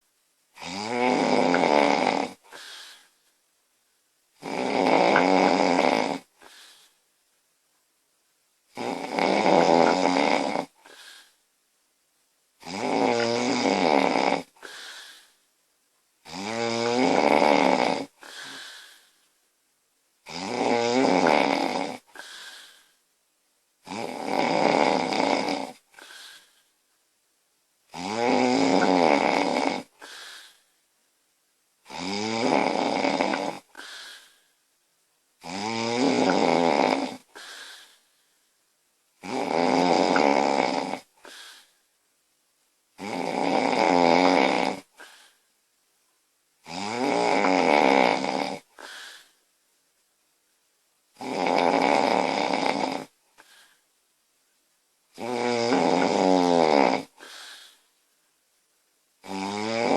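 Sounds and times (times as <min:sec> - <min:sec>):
woman snoring loudly: 0:00.6 - 0:03.1, 0:04.4 - 0:06.8, 0:08.7 - 0:11.3, 0:12.6 - 0:15.3, 0:16.2 - 0:19.0, 0:20.2 - 0:22.8, 0:23.8 - 0:26.5, 0:27.9 - 0:30.6, 0:31.8 - 0:34.4, 0:35.4 - 0:38.0, 0:39.2 - 0:41.7, 0:43.0 - 0:45.2, 0:46.6 - 0:49.3, 0:51.2 - 0:53.2, 0:55.2 - 0:57.8, 0:59.2 - 0:59.9
soft breath: 0:02.4 - 0:03.2, 0:06.4 - 0:07.1, 0:14.6 - 0:15.5, 0:18.2 - 0:19.3, 0:22.1 - 0:23.0, 0:29.9 - 0:30.8, 0:33.7 - 0:34.6, 0:37.3 - 0:38.5, 0:41.2 - 0:41.8, 0:48.7 - 0:49.4, 0:53.3 - 0:53.9, 0:57.2 - 0:58.0.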